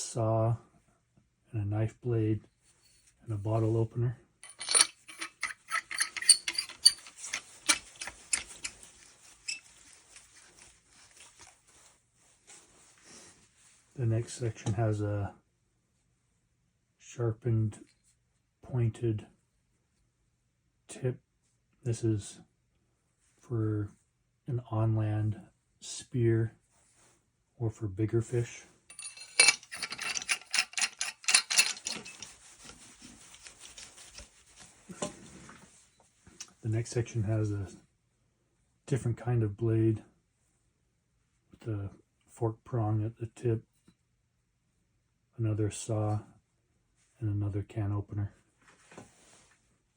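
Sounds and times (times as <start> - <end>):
metal parts clicking together: 4.4 - 8.9, 28.9 - 32.8.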